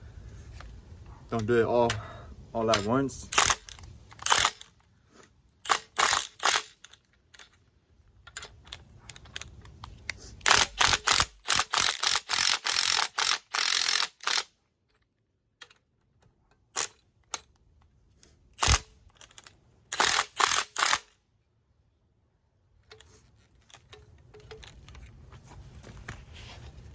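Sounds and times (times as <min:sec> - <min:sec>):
ratchet wrench clicking: 0:02.7 - 0:04.7, 0:05.7 - 0:06.9, 0:10.4 - 0:14.5, 0:18.6 - 0:18.9, 0:19.9 - 0:21.1.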